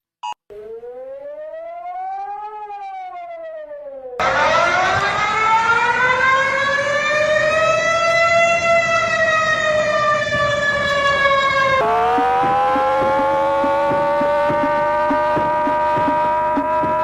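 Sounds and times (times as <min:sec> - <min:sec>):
warning siren wailing: 0:00.5 - 0:17.0.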